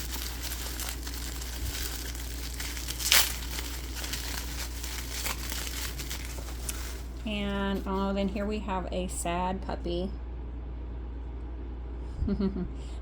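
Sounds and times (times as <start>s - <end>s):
bubble wrap crinkling: 0.0s - 8.2s
low steady hum: 0.0s - 13.0s.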